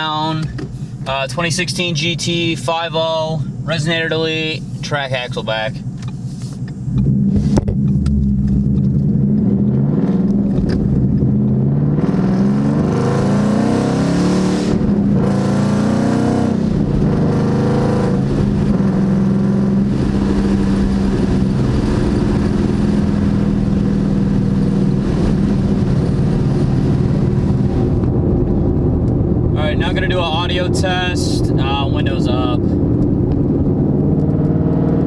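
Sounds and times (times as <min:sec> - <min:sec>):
car engine revving: 0:00.0 - 0:35.0.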